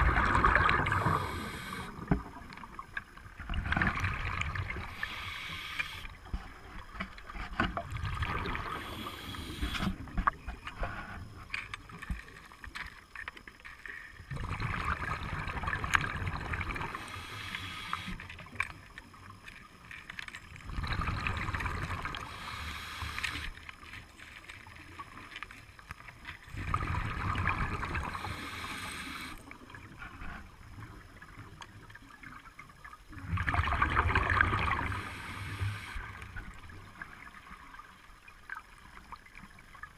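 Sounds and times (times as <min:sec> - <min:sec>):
exhaled bubbles rushing: 0:00.0 - 0:02.5, 0:03.4 - 0:05.2, 0:07.8 - 0:09.1, 0:14.3 - 0:17.2, 0:20.6 - 0:22.4, 0:26.5 - 0:28.5, 0:33.1 - 0:35.2
scuba regulator breathing hiss: 0:01.0 - 0:02.0, 0:04.9 - 0:06.2, 0:08.6 - 0:10.0, 0:17.0 - 0:18.2, 0:22.2 - 0:23.5, 0:28.1 - 0:29.4, 0:34.8 - 0:36.1.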